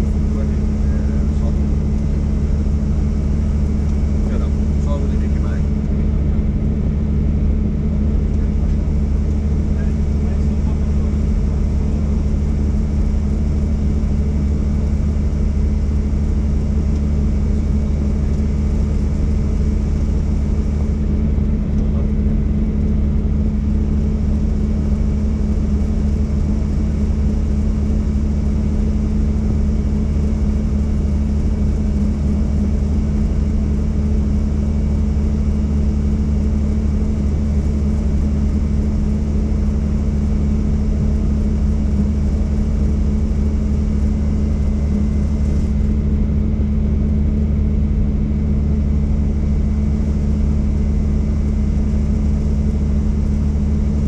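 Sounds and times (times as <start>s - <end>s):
helicopter engine and rotor drone: 0.0s - 54.0s.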